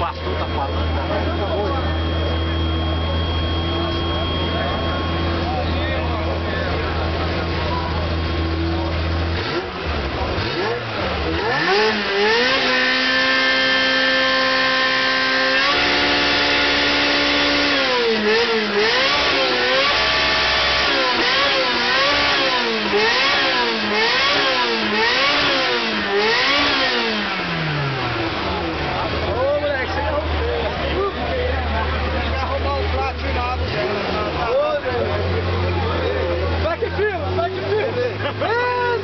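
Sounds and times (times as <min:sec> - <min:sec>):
sports car engine revving: 0:00.0 - 0:39.0.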